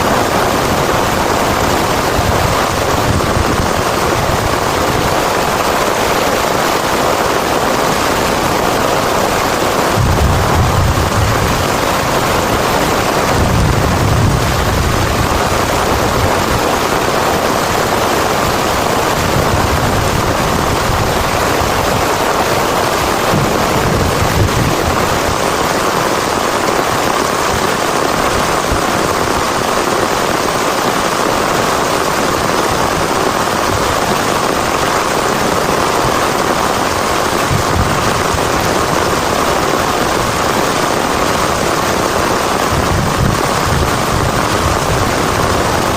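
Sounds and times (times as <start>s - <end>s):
heavy rain pouring: 0.0s - 45.9s
low rumbles: 9.8s - 16.9s, 22.8s - 25.9s.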